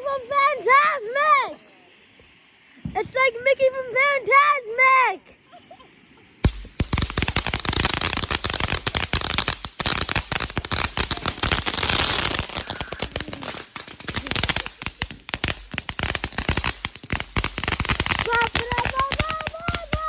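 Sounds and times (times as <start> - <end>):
firework crackling pops: 6.4 - 20.0.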